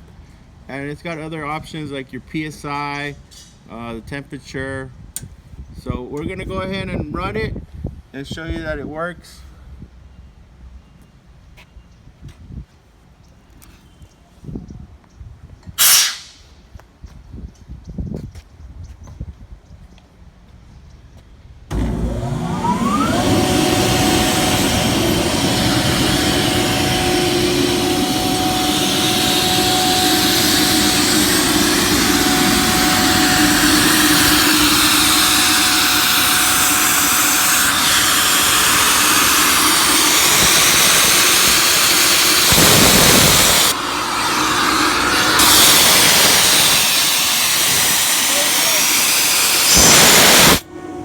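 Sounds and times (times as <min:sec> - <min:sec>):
rushing air: 0:21.7 - 0:50.7
air compressor drone: 0:21.7 - 0:51.0.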